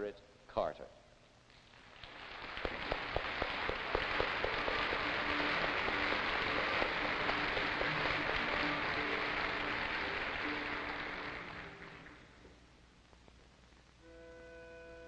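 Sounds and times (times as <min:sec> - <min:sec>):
audience applauding: 0:01.8 - 0:12.4.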